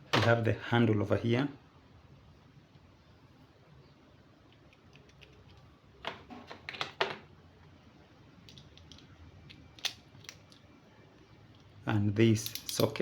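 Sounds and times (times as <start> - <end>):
sockets and ratchet clinking: 12.4 - 13.0.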